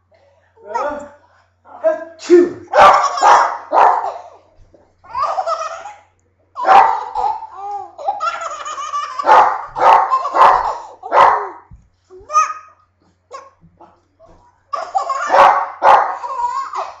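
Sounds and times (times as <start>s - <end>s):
sneeze: 2.2s - 2.6s
dog barking: 2.7s - 4.3s, 6.6s - 7.4s, 9.2s - 11.6s, 15.1s - 16.3s
baby laughing: 2.8s - 13.7s, 14.7s - 17.0s.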